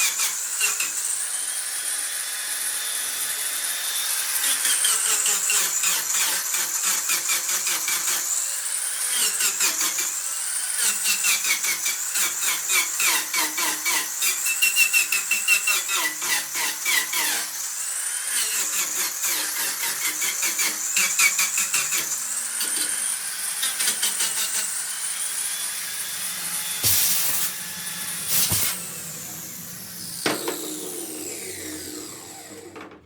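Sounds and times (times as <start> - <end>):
angle grinder motor whine: 24.4 - 33.0.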